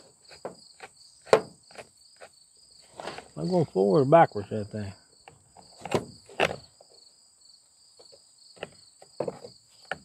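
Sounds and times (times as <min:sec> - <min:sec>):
insects trilling: 0:00.0 - 0:10.0.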